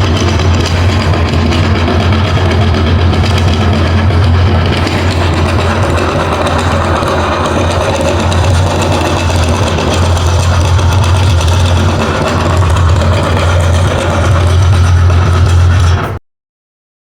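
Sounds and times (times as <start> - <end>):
electric meat grinder humming: 4.4 - 15.9.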